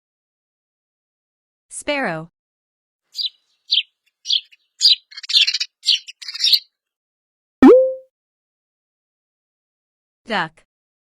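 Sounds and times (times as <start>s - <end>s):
sparrow chirping: 3.2s - 6.7s.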